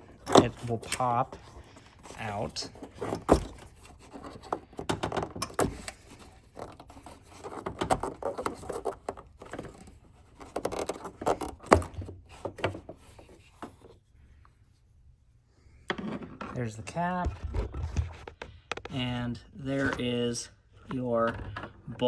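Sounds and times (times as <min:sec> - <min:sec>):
plastic cap clicking and scraping: 0:00.0 - 0:14.0.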